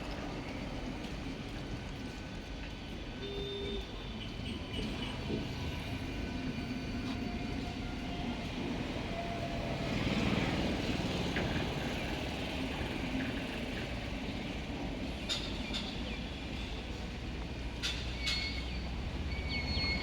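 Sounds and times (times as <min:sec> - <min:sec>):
train rumbling on rails: 0:00.0 - 0:20.0.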